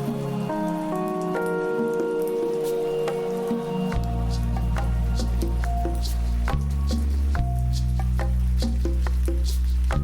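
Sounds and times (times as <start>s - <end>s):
synth pad: 0.0s - 7.6s.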